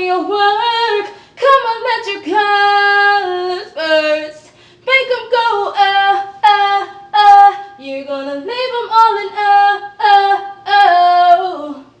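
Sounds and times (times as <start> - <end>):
woman singing wordless notes: 0.0 - 12.0
breaths: 1.1 - 1.4, 4.4 - 4.9.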